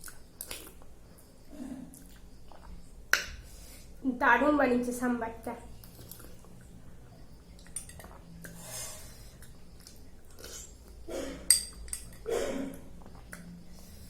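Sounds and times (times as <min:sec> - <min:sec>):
breaths: 0:03.4 - 0:04.0, 0:08.5 - 0:09.6, 0:13.7 - 0:14.0
chewing: 0:05.8 - 0:06.8, 0:07.5 - 0:08.6, 0:09.2 - 0:11.0
cutlery clinking on a plate: 0:11.5 - 0:12.3.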